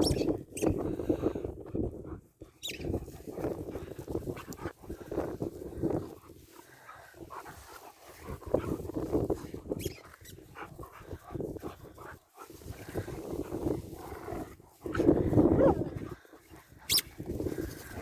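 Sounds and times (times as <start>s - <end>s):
dogs vocalizing in play: 6.0s - 18.0s.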